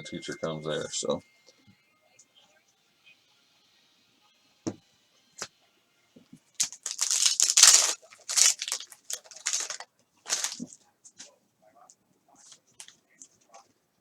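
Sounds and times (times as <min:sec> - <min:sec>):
plastic wrapper crinkling and tearing: 0:06.6 - 0:10.8.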